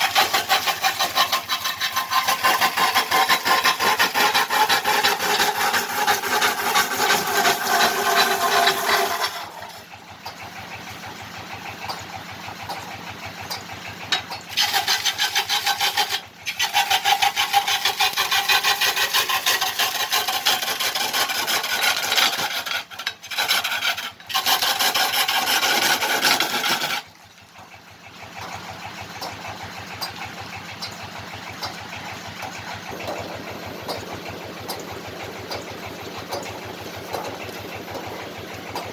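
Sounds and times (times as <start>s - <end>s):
cutting tool scraping spinning wood: 0.0s - 10.0s, 13.8s - 27.2s, 32.4s - 38.9s
lathe motor running: 0.0s - 10.1s, 14.0s - 27.1s.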